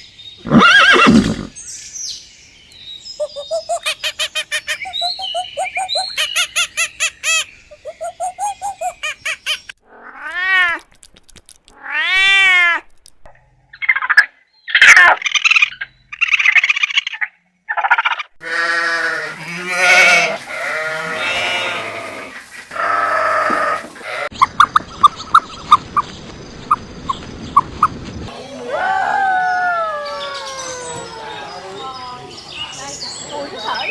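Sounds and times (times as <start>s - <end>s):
cats meowing: 9.9s - 10.8s, 11.7s - 12.8s
short evenly spaced ticks: 10.7s - 11.8s.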